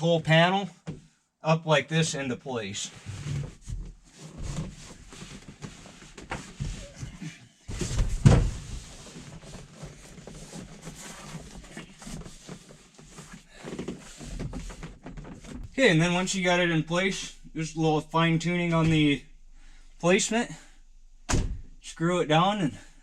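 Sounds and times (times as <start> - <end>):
loud thump: 21.3 - 21.7.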